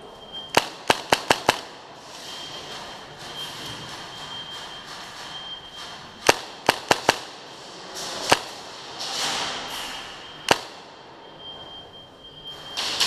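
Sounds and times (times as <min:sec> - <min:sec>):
airsoft gun shots: 0:00.5 - 0:01.8, 0:06.2 - 0:07.4, 0:10.5 - 0:10.9.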